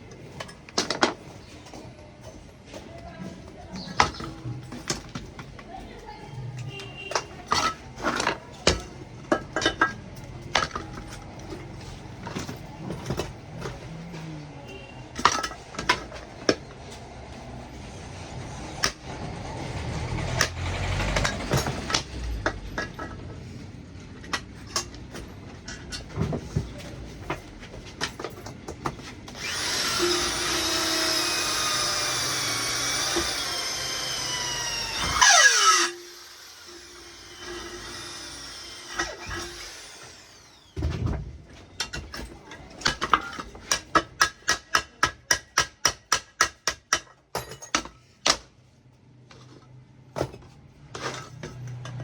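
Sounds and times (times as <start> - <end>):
clicks and knocks of hand work: 6.5 - 17.1, 37.4 - 48.6, 49.2 - 52.0
small high-speed motor whining: 29.4 - 40.8.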